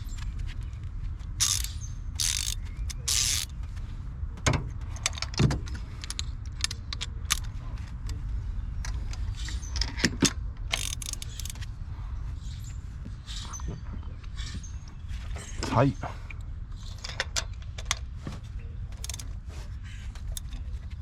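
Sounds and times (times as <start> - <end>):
socket ratchet clicking: 1.4 - 3.5, 6.1 - 7.5, 10.7 - 11.6, 19.0 - 19.2.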